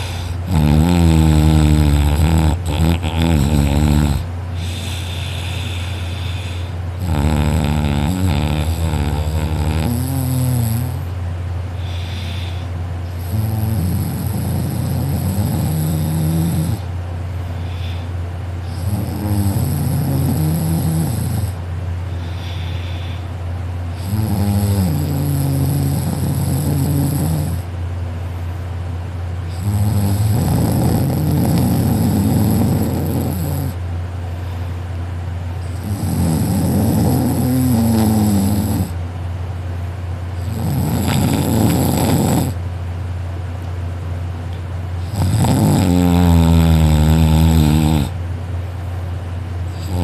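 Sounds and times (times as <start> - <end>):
quiet breaths: 0.0 - 0.5, 3.4 - 24.2
person snoring loudly: 0.0 - 11.1, 11.8 - 16.9, 17.7 - 21.6, 23.9 - 27.7, 29.5 - 33.8, 35.6 - 39.0, 40.4 - 42.6, 45.0 - 48.2, 49.8 - 50.0
steady low hum: 0.0 - 50.0.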